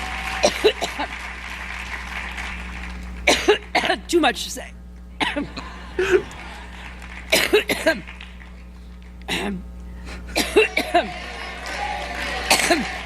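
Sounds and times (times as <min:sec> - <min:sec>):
woman coughing: 0:00.4 - 0:01.1, 0:03.3 - 0:04.1, 0:05.2 - 0:06.3, 0:07.3 - 0:08.1, 0:09.3 - 0:11.1, 0:12.5 - 0:13.0.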